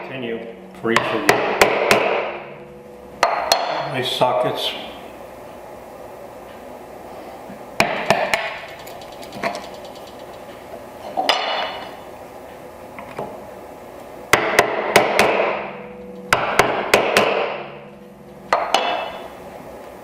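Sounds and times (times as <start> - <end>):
mallet striking chisel: 0.9 - 2.5, 3.2 - 3.8, 14.3 - 17.8, 18.5 - 19.3.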